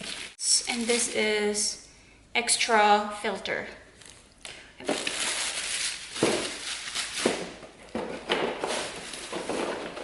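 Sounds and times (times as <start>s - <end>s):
plastic packaging crinkling: 0.0s - 1.2s, 4.0s - 7.8s, 8.6s - 10.0s.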